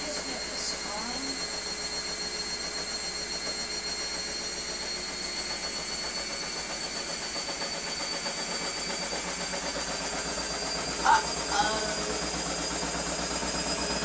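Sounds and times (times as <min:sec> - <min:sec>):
high-pitched whine: 0:07.4 - 0:14.0.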